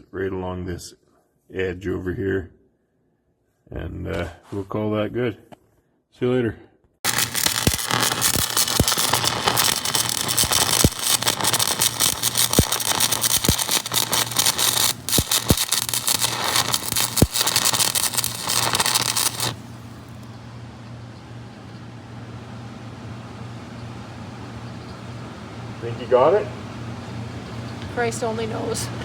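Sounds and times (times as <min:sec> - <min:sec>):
welding arc crackling: 0:07.0 - 0:20.3.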